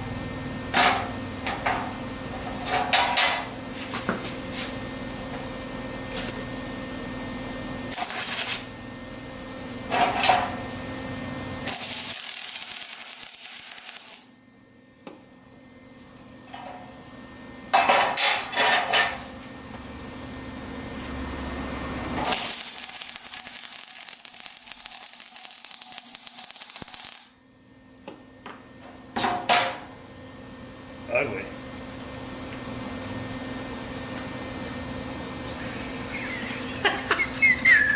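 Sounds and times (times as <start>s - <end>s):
welding arc hiss: 7.9s - 8.8s, 11.6s - 14.3s, 22.2s - 27.4s.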